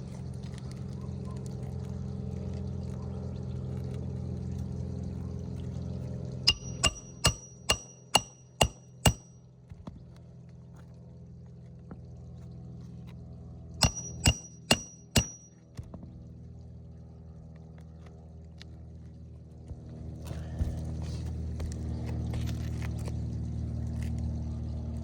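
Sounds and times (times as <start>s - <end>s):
hammer driving nails into shingle: 6.5s - 9.2s, 13.8s - 15.5s.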